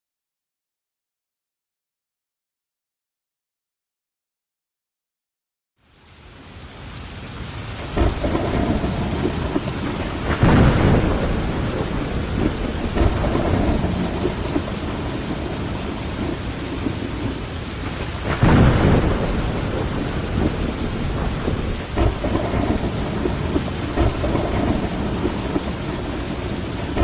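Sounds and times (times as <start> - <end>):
heavy rain on window glass: 5.8 - 27.0
low rumbles of thunder: 7.8 - 27.0.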